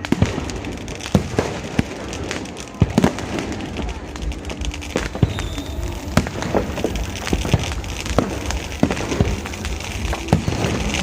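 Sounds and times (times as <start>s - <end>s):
fireworks popping and banging: 0.0s - 11.0s
low rumble: 3.3s - 11.0s.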